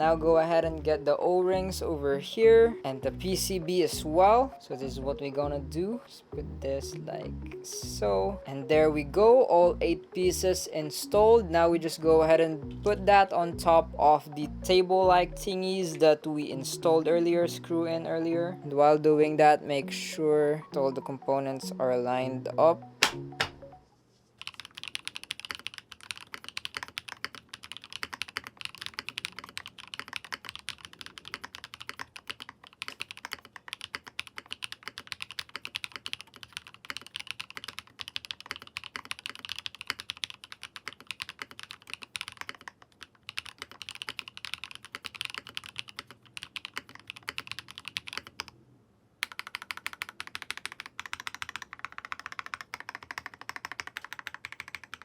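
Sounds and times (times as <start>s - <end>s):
mechanical keyboard typing: 22.8s - 23.8s, 24.4s - 48.6s, 49.2s - 55.0s.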